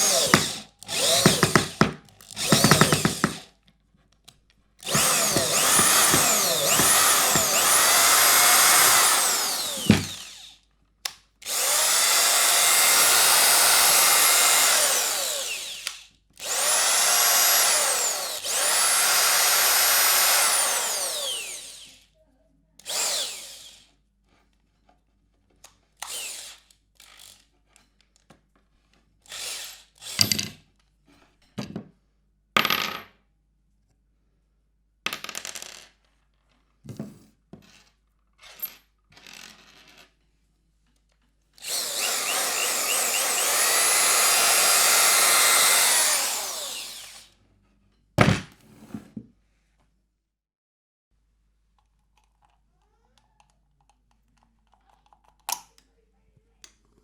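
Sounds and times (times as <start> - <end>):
electric screwdriver motor whining: 0.0 - 3.4, 4.8 - 10.6, 11.4 - 22.0, 22.8 - 23.9, 26.0 - 27.3, 41.6 - 47.3.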